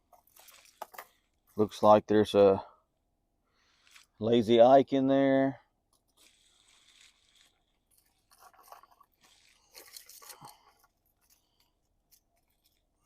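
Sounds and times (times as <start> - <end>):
plastic bag crinkling: 0.2 - 1.2, 6.2 - 11.6.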